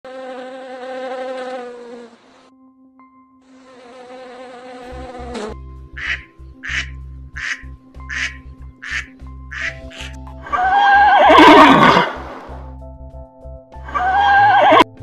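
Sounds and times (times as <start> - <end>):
fly buzzing: 0.0 - 2.6, 3.4 - 11.8
background music: 0.8 - 15.0.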